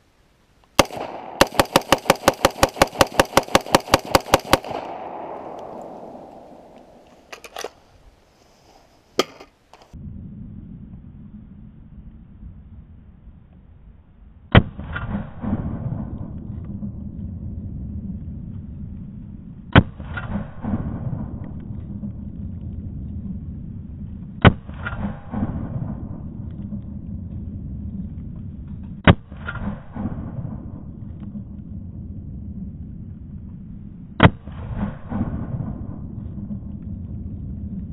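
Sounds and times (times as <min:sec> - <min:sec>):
steady low rumble: 0:00.0 - 0:37.9
rifle shots with echo: 0:00.8 - 0:07.3, 0:34.2 - 0:36.7.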